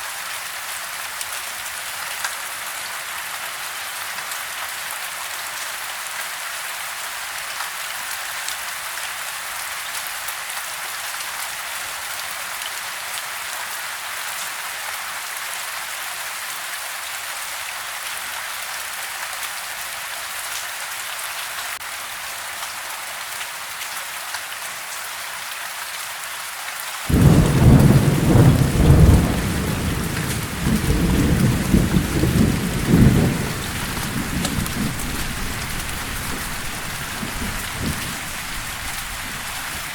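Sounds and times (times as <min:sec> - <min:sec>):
rain falling on a house: 0:00.0 - 0:39.9
thunder rumbling: 0:27.1 - 0:39.9.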